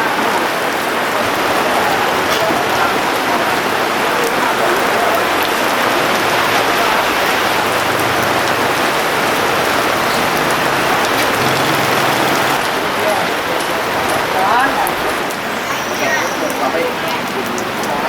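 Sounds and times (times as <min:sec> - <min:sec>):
heavy rain on hard surfaces: 0:00.0 - 0:18.0
raindrop taps: 0:01.4 - 0:12.8, 0:16.4 - 0:18.0.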